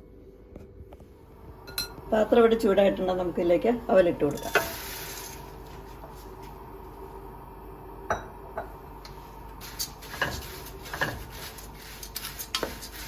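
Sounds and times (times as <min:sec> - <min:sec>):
faint steady hum: 0:00.0 - 0:13.0
spatula knocking and scraping pan: 0:10.0 - 0:13.0.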